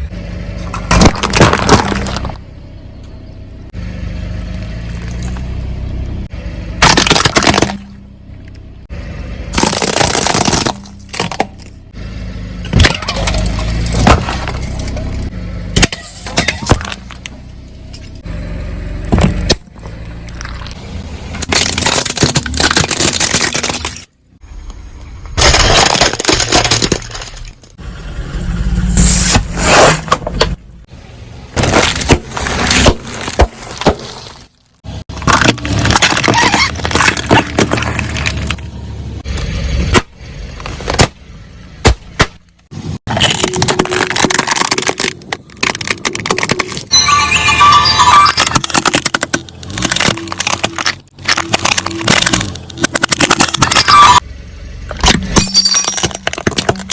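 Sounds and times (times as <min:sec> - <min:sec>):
bottles crushed under car tyres: 0:00.6 - 0:02.4, 0:06.8 - 0:08.1, 0:09.5 - 0:11.9, 0:12.6 - 0:18.1, 0:19.0 - 0:24.2, 0:25.4 - 0:27.8, 0:31.4 - 0:41.2, 0:41.8 - 0:54.2, 0:54.9 - 0:56.9.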